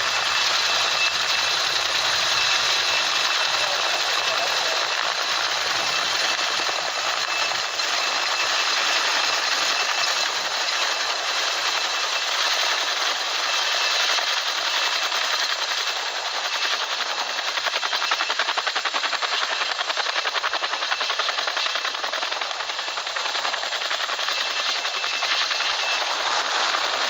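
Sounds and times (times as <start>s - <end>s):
turbine whine: 0.0s - 12.6s, 22.1s - 27.0s
helicopter rotor chop: 0.0s - 27.0s.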